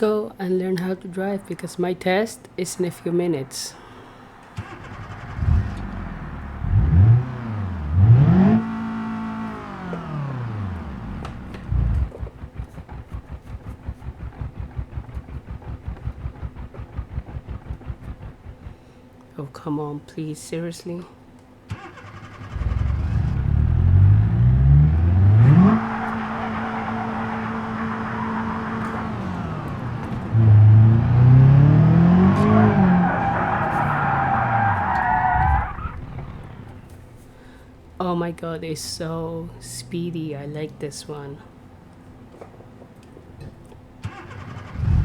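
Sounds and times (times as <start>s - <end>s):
car engine revving: 4.3s - 19.0s, 21.7s - 37.2s, 44.0s - 45.0s.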